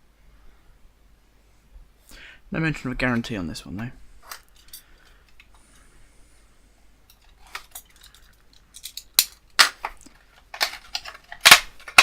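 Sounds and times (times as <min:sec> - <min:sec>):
plastic packaging crackling: 0:07.3 - 0:12.0.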